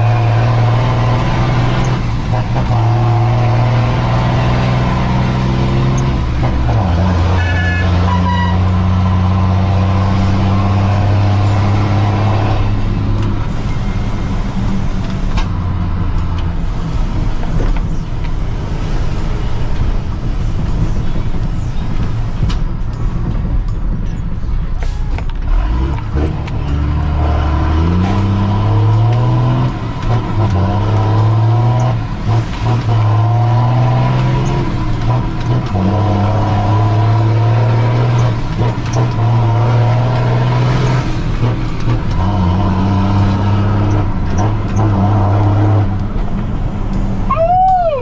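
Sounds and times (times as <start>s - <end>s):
diesel truck engine droning: 0.0s - 48.0s.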